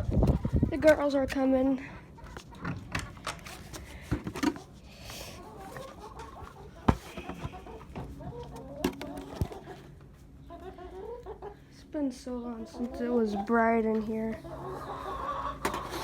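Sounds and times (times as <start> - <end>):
hens clucking softly: 5.2 - 11.8, 12.6 - 16.0.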